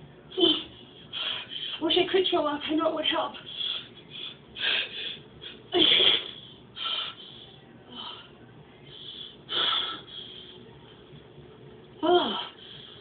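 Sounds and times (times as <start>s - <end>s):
gasping breaths: 6.6s - 10.7s.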